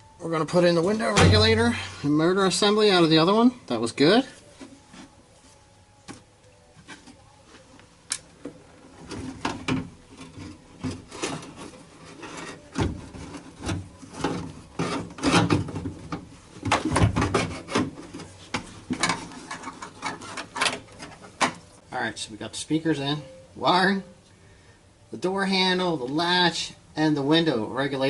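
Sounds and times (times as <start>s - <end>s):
metal parts knocking and scraping: 9.0s - 21.7s.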